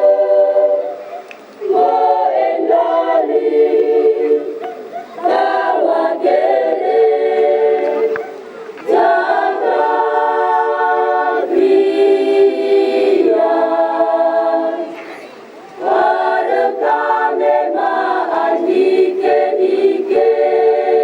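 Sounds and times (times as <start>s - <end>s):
choir singing in harmony: 0.0s - 15.1s, 15.8s - 21.0s.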